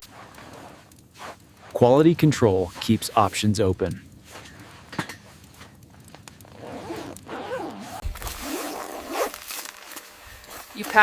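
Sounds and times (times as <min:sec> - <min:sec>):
zipper being pulled: 0:00.1 - 0:01.4, 0:06.5 - 0:10.8
handling of gear: 0:04.2 - 0:11.0.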